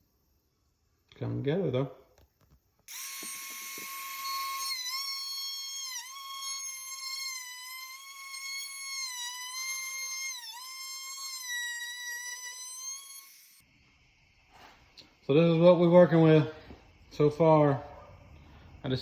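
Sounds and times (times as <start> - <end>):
wood router high whine: 2.9 - 13.6.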